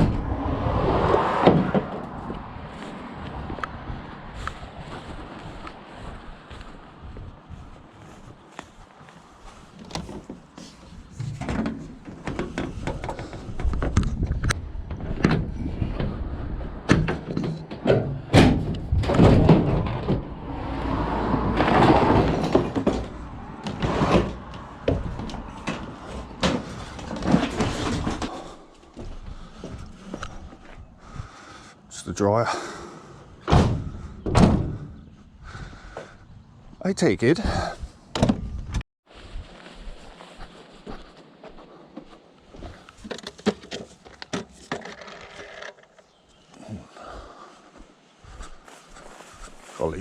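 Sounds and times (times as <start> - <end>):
knocks bangs and clattering: 16.8 - 28.4, 33.4 - 35.0
door slams: 33.4 - 35.0.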